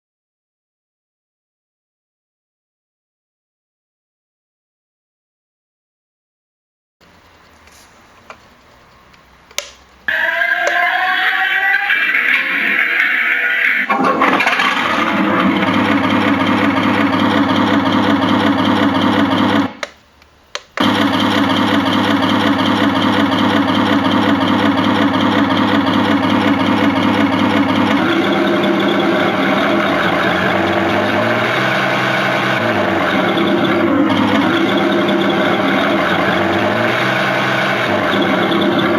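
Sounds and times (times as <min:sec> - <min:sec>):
simulated tank engine running: 0:13.9 - 0:19.8, 0:20.8 - 0:38.9.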